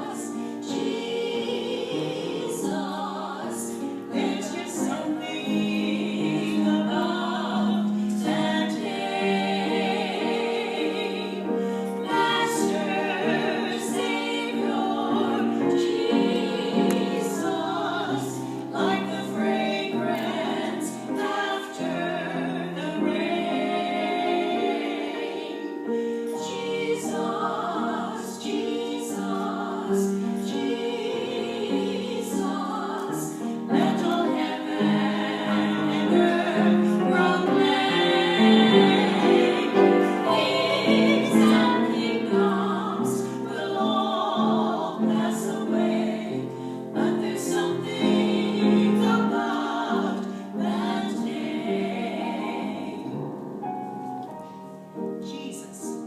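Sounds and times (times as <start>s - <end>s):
choir singing gospel: 0.0s - 56.0s.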